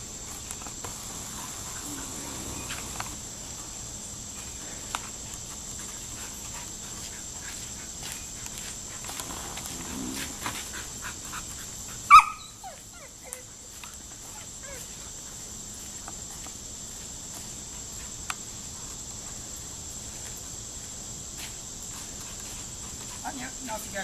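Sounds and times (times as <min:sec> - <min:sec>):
high hiss: 0:00.0 - 0:05.4
puppy yelping: 0:12.1 - 0:13.5, 0:14.6 - 0:14.9.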